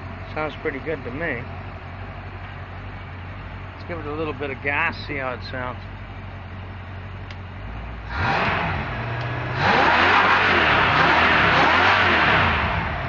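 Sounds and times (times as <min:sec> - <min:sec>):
boat engine revving: 0:08.0 - 0:13.0.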